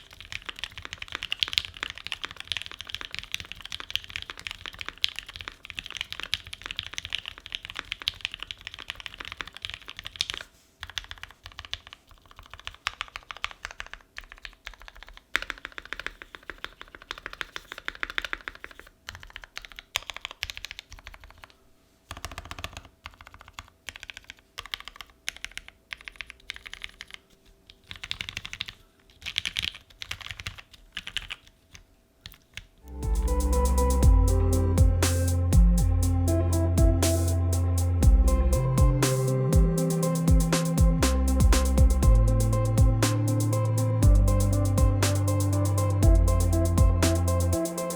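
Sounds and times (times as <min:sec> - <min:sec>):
mechanical keyboard typing: 0:00.0 - 0:33.8.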